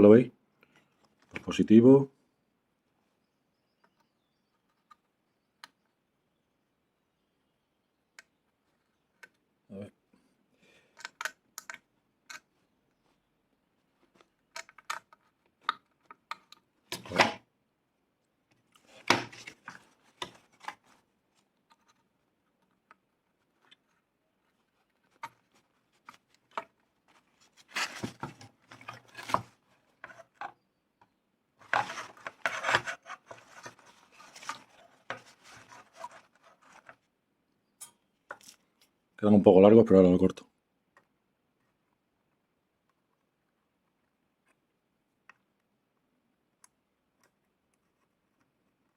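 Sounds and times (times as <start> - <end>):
rubbing and scraping: 18.8 - 30.5, 31.6 - 37.0.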